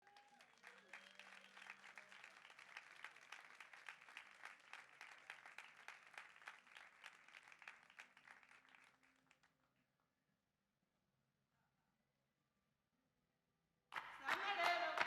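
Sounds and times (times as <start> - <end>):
faint applause: 0.0 - 9.4, 14.0 - 15.0.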